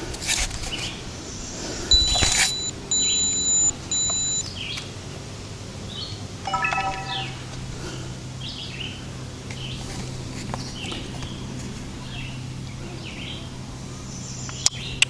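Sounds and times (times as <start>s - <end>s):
outdoor background noise: 0.0s - 15.0s
small birds chirping: 10.5s - 15.0s.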